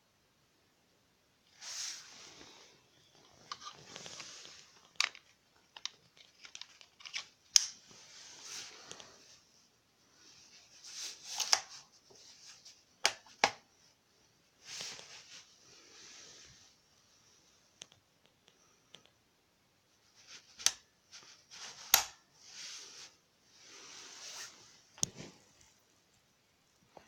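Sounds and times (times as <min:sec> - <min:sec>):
soft rustling and sliding: 0:01.5 - 0:05.4, 0:07.8 - 0:12.9, 0:13.9 - 0:17.7, 0:19.9 - 0:27.0.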